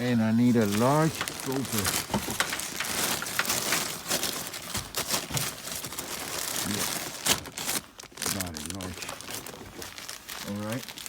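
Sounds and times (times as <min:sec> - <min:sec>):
packaging rustling and crinkling: 0:00.0 - 0:11.0
small clicks and knocks: 0:02.0 - 0:05.5.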